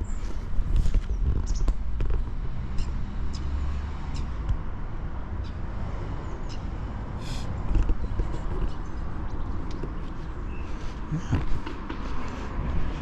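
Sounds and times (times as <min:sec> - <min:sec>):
road traffic rumbling: 0:00.0 - 0:13.0
footsteps: 0:07.8 - 0:13.0.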